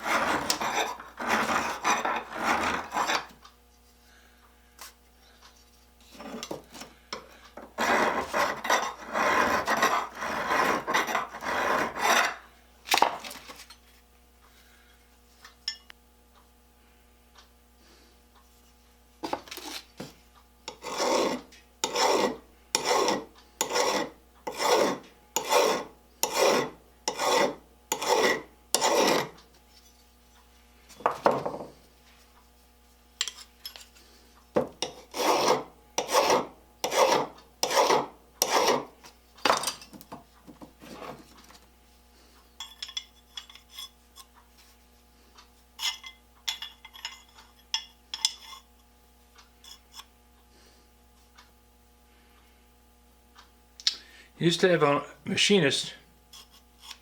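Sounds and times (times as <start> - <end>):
hand file scraping steel: 0.0 - 3.4, 7.6 - 12.4, 20.7 - 29.4, 34.8 - 39.0, 56.3 - 57.0.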